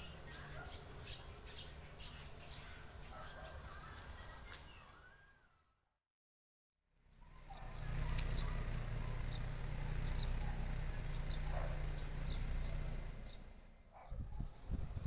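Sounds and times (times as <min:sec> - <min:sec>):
low engine rumble: 0:07.0 - 0:15.0
wind buffeting microphone: 0:14.0 - 0:15.0.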